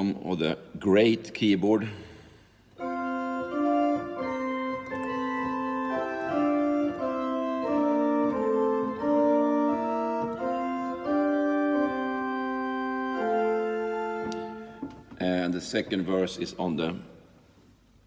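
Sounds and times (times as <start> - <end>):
organ playing hymn chords: 2.8 - 17.0.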